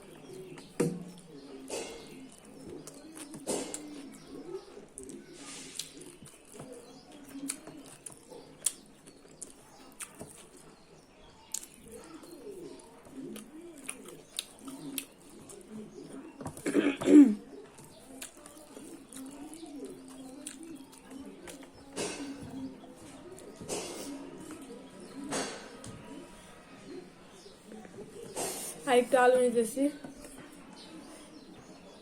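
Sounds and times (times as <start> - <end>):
pigeons cooing: 0.0 - 32.0
person eating: 1.1 - 10.7, 11.4 - 24.8.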